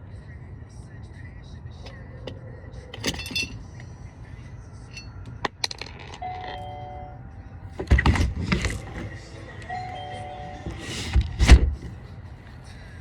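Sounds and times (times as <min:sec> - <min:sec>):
small metal parts clinking: 0:01.8 - 0:06.7.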